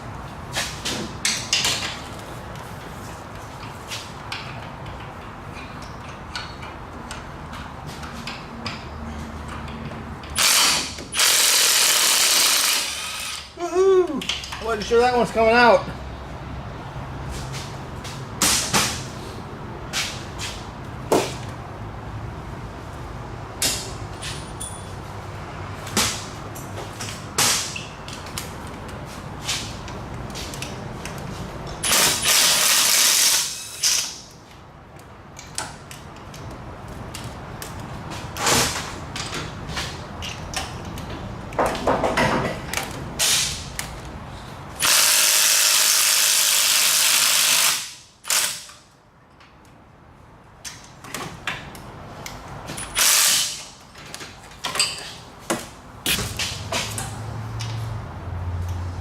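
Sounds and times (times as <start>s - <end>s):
power tool running: 44.8s - 48.6s.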